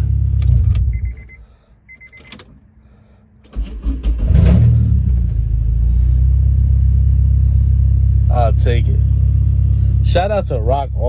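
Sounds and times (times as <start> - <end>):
car engine starting and idling: 0.0 - 11.0.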